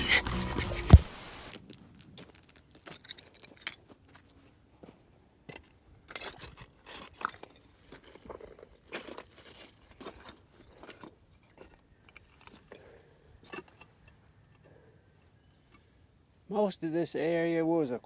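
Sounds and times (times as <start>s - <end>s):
footsteps crunching on trail: 0.0s - 5.1s.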